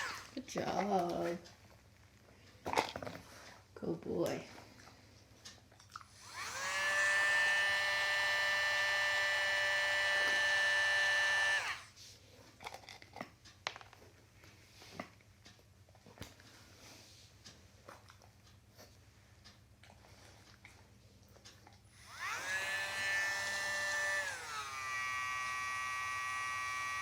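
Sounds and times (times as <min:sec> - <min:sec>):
rotary tool motor whine: 0:00.0 - 0:00.4, 0:06.2 - 0:12.0, 0:21.9 - 0:27.0.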